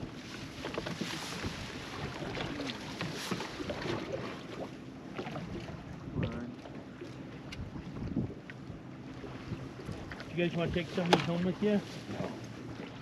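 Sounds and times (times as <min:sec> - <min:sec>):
water noise around boat: 0:00.0 - 0:13.0
wind: 0:00.0 - 0:13.0.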